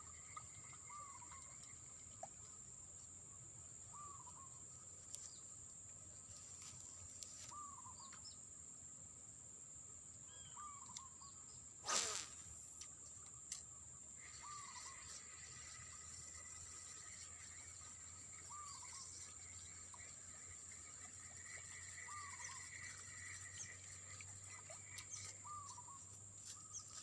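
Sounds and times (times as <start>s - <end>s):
high insect drone: 11.5s - 27.0s.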